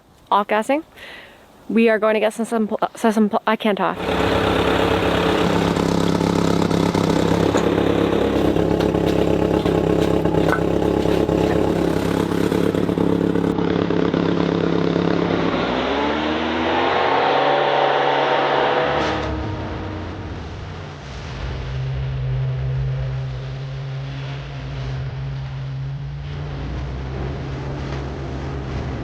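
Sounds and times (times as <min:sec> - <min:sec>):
vehicle engine revving: 0:04.0 - 0:29.0.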